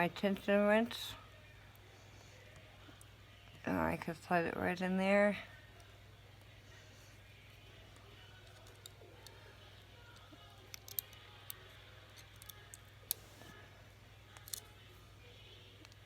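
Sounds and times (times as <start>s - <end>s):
low steady hum: 0.0s - 16.0s
lock pick metallic clicks: 10.7s - 13.5s, 14.4s - 14.7s.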